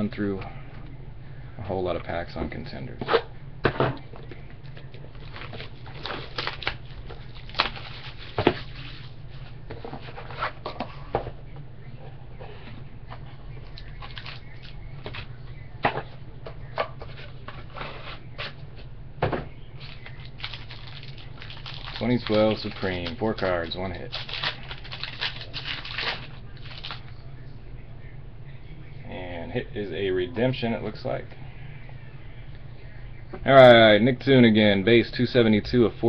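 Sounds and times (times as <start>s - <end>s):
steady low hum: 0.0s - 36.0s
packaging crinkles: 5.1s - 9.1s, 13.8s - 14.8s, 19.8s - 27.1s.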